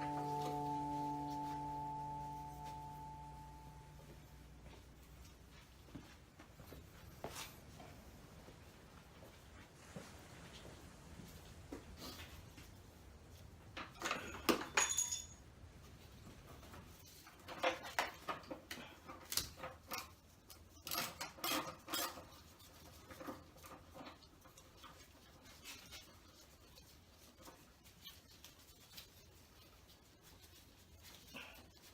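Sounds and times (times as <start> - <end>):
ringing metal clink: 0.0 - 4.2, 14.2 - 15.5
metal tools clinking: 13.9 - 15.4.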